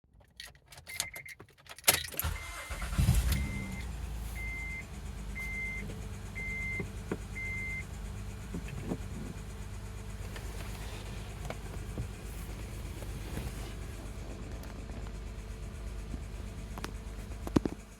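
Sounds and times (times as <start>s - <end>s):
car engine starting and idling: 0.2s - 17.9s
dashboard warning chime: 2.2s - 7.9s
engine ticking: 2.2s - 17.9s.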